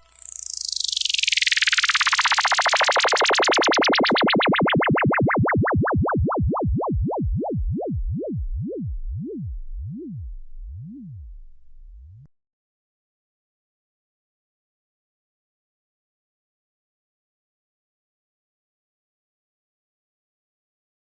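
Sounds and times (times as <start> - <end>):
synthesized laser sound effect: 0.0 - 11.3.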